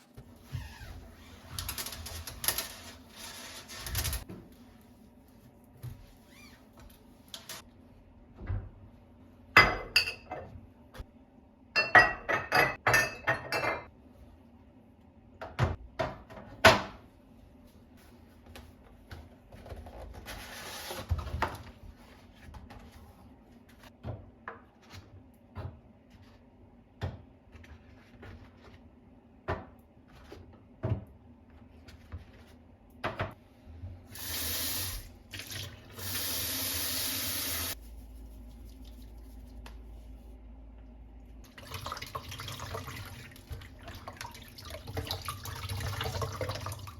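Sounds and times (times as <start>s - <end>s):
dishes and glassware clinking: 9.6s - 10.5s, 11.8s - 13.9s
water tap running: 34.1s - 37.8s, 41.5s - 46.9s.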